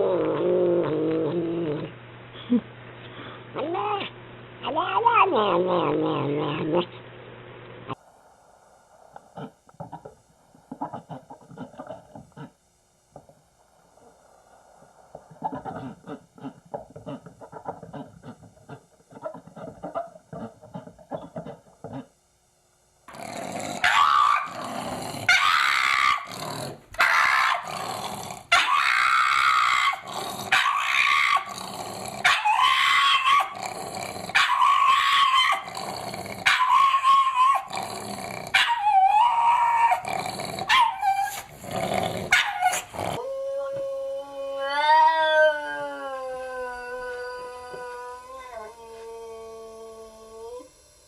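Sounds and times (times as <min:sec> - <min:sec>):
dog barking roughly: 0:23.7 - 0:33.6, 0:34.3 - 0:35.8, 0:36.4 - 0:37.7, 0:38.5 - 0:38.8, 0:39.9 - 0:41.4, 0:42.2 - 0:43.0
dog howling: 0:23.7 - 0:37.9, 0:38.5 - 0:41.5, 0:42.3 - 0:50.8.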